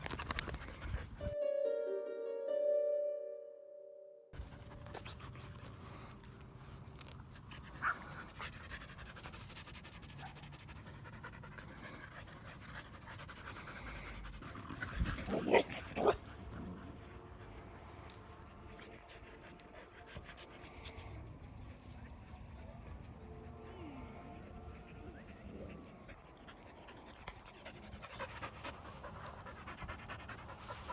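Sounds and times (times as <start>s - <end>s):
dogs panting: 0.0s - 1.3s, 4.4s - 23.7s, 24.4s - 30.9s
dog barks: 15.3s - 16.2s.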